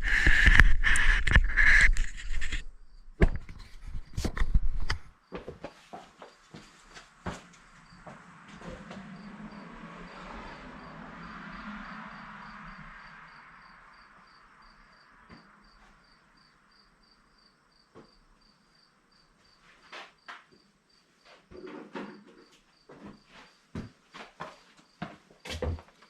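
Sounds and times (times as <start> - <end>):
sharp clicks and rustles: 0.0 - 5.1
cricket chirping: 7.2 - 21.4.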